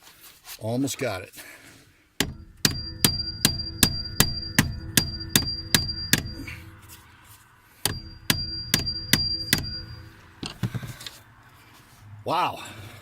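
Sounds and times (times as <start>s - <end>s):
hammer striking metal: 2.2s - 6.9s, 7.8s - 10.4s.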